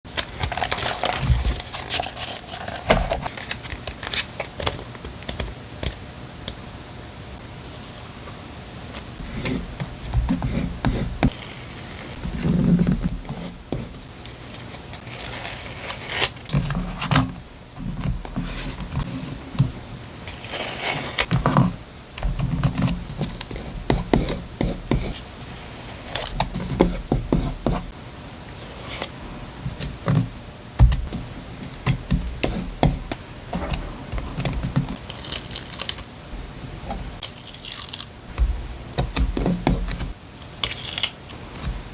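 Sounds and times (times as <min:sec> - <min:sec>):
paper rustling and crinkling: 0:00.1 - 0:05.4, 0:08.9 - 0:17.3, 0:33.5 - 0:36.1.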